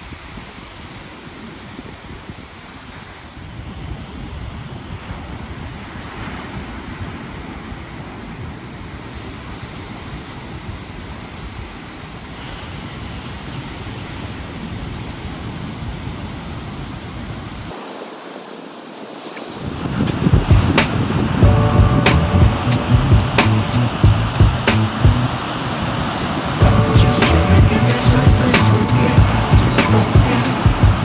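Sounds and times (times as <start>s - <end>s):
ocean waves breaking: 17.7s - 24.0s.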